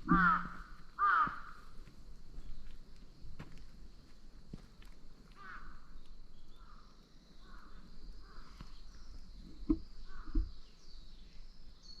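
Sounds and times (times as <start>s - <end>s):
insect chirring: 5.4s - 12.0s.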